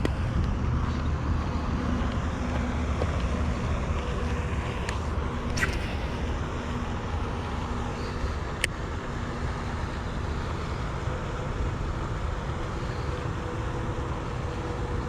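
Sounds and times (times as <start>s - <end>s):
faint constant hum: 0.0s - 15.0s
low outdoor rumble: 0.0s - 15.0s
short sharp ticks: 5.5s - 6.3s.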